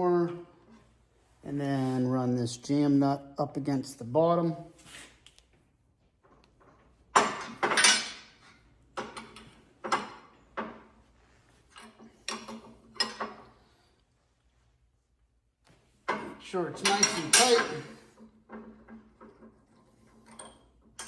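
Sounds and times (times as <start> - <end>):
metallic knocks of steel tools: 16.8 - 17.9.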